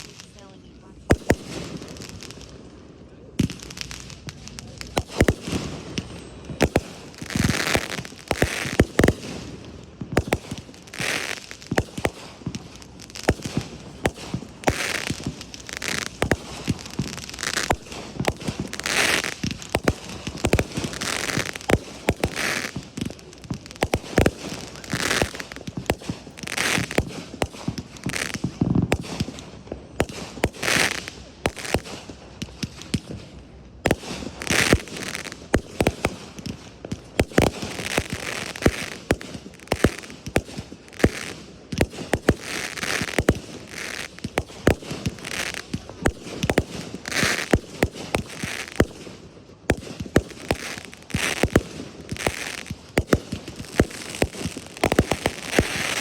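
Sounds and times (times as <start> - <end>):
crackling hissing firework bursts: 0.0 - 56.0
fireworks exploding bangs: 0.0 - 56.0.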